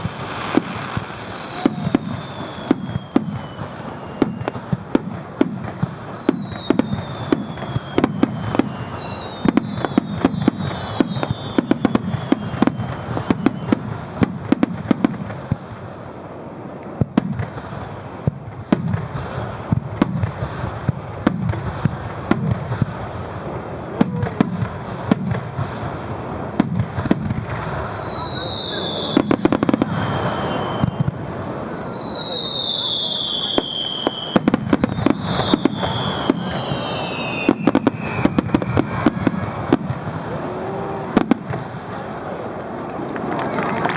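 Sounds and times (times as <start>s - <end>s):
high falling whistles: 0.4s - 4.6s, 6.0s - 13.7s, 27.2s - 39.8s.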